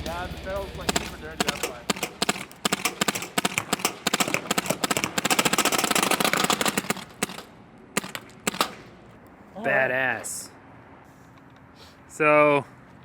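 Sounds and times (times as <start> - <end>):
paintball gun firing: 0.8 - 9.0.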